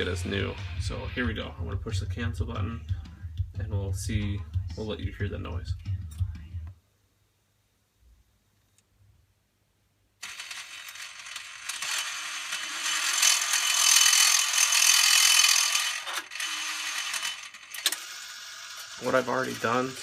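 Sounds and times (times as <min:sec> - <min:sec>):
disc changer gears grinding and rattling: 0:10.2 - 0:20.0.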